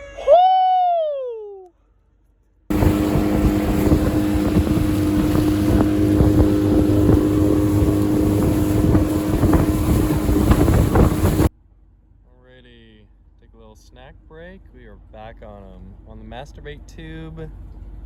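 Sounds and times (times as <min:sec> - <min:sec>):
outboard motor running: 0:02.7 - 0:11.5
wind buffeting microphone: 0:02.7 - 0:11.5.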